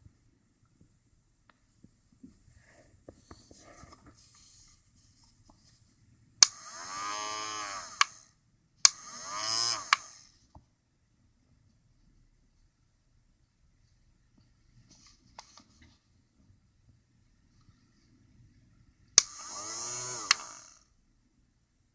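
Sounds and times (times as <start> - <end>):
small electric motor whining: 6.5 - 8.3, 8.9 - 10.4, 19.2 - 20.9.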